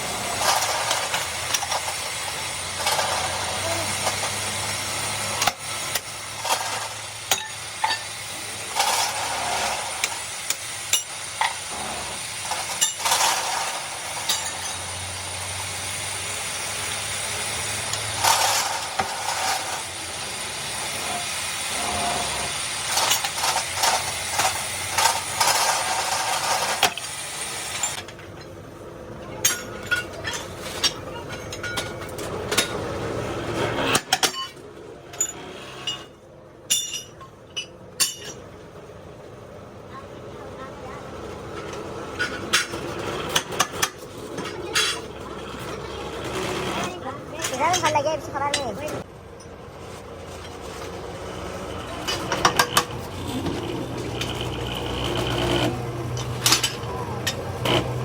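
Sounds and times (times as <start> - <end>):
steady machine noise: 0.0 - 30.4, 50.7 - 58.0.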